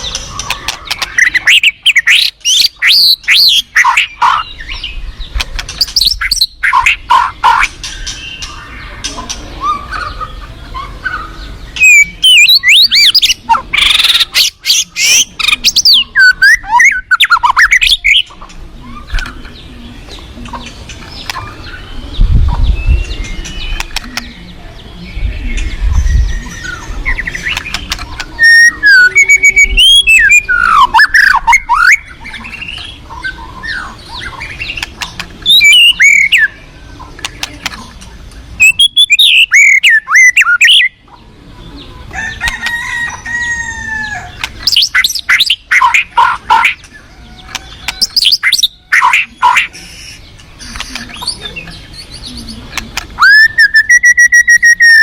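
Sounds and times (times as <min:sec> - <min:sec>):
bird singing whistles: 0:28.4 - 0:32.0, 0:35.4 - 0:36.6, 0:38.6 - 0:41.0, 0:53.2 - 0:55.0.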